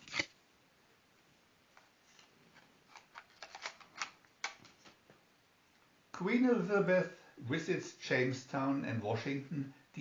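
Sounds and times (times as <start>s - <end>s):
cards and paper rustling: 2.0s - 5.0s.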